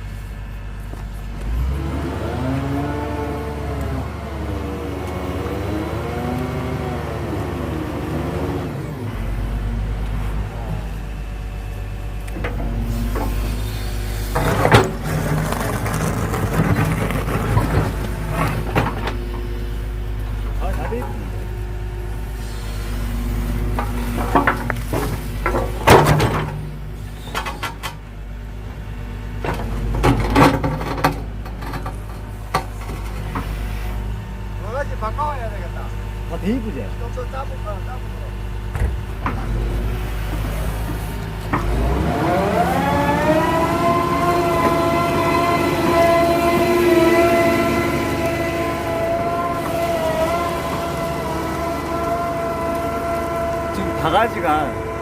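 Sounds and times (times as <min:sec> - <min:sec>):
excavator engine running: 0:00.0 - 0:55.0
steel bucket clanking and scraping: 0:14.2 - 0:19.5, 0:23.7 - 0:27.9.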